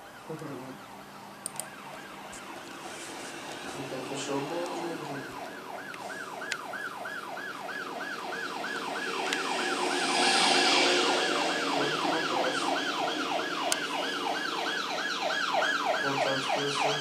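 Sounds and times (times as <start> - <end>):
police siren yelping: 0.0 - 17.0
hissing rush: 7.9 - 14.6.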